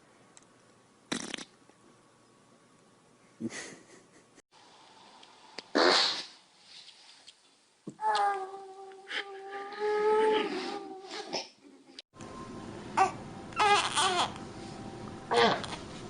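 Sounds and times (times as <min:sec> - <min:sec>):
farts: 0:01.1 - 0:01.6, 0:05.7 - 0:06.4.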